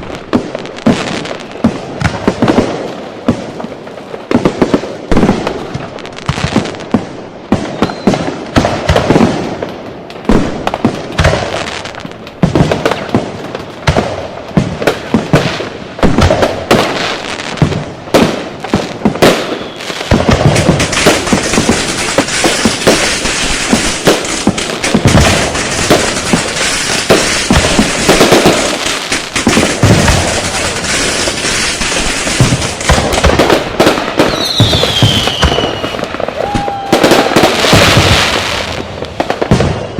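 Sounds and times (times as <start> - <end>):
firecrackers and fireworks banging: 0.0 - 39.9
falling firework whistle: 7.5 - 8.4, 19.2 - 20.1, 34.2 - 38.8, 39.5 - 39.9.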